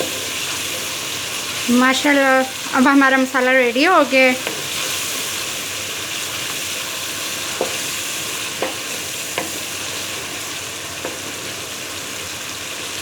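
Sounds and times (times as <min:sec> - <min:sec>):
masala sizzling in oil: 0:00.0 - 0:13.0
spoon knocking against pan: 0:08.6 - 0:09.7.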